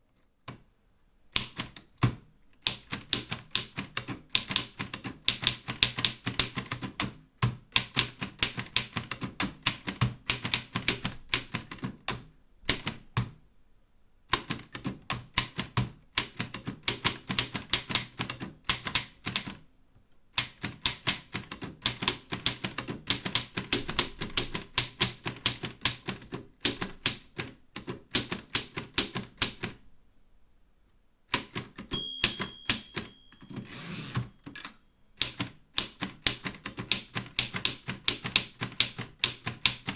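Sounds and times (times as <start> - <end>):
typewriter carriage return: 31.4 - 39.9
typewriter key strikes: 31.4 - 39.9
typewriter margin bell: 31.9 - 34.3.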